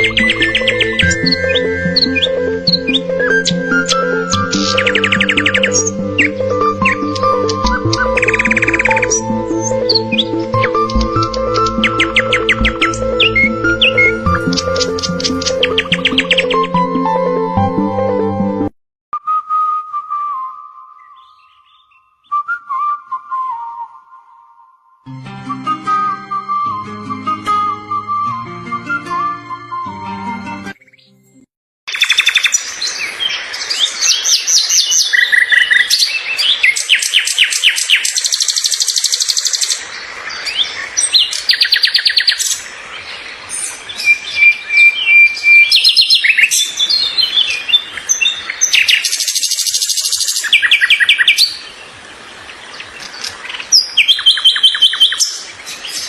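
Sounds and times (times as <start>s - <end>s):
songbirds chirping and singing: 0.0s - 17.0s, 20.9s - 22.4s, 31.9s - 56.0s.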